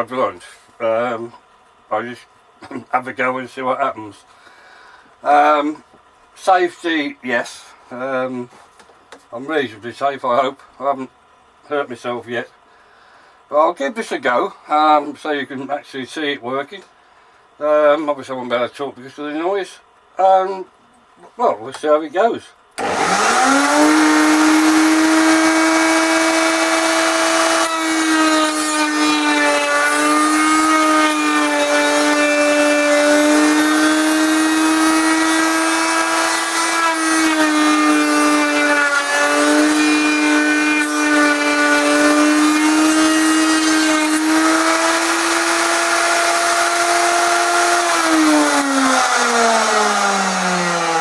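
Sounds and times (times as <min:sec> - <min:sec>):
electric router whining: 0:22.8 - 0:51.0
router winding down: 0:22.8 - 0:51.0
shop vacuum running: 0:22.8 - 0:51.0.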